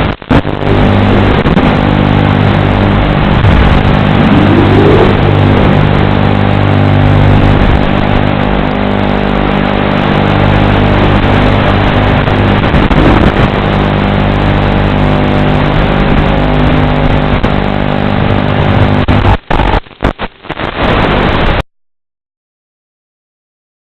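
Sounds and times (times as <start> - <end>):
drone electric motors whirring: 3.2 - 7.4.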